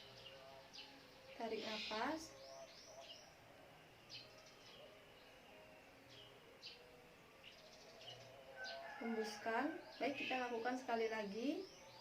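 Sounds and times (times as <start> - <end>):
faint bird chirps: 0.0 - 3.4.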